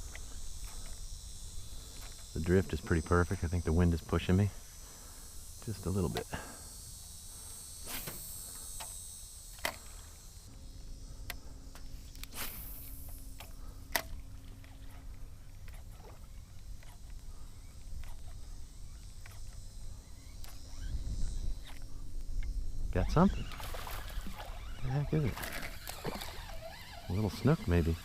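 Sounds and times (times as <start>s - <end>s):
faint steady hum: 0.0s - 28.0s
wind rumbling on microphone: 20.5s - 25.4s.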